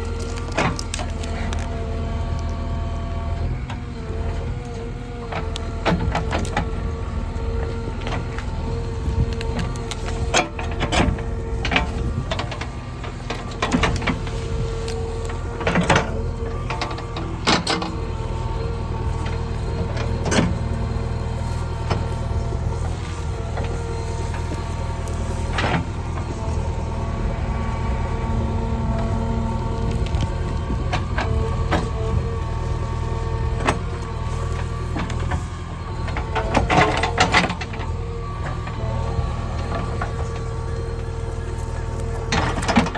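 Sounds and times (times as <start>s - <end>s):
constant whine: 0.0s - 42.9s
diesel engine running: 0.0s - 42.9s
sharp cracks and knocks: 0.1s - 1.7s.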